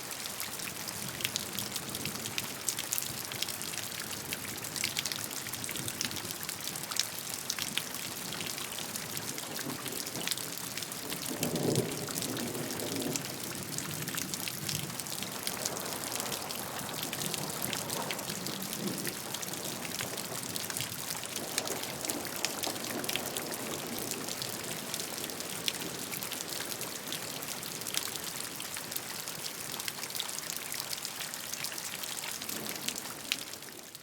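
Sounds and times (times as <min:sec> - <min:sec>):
steady rain: 0:00.0 - 0:34.0
raindrops striking close: 0:04.2 - 0:29.9.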